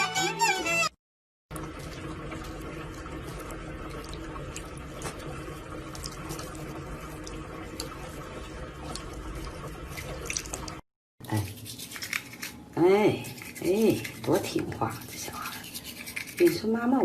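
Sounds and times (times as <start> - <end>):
water dripping: 1.5 - 10.8.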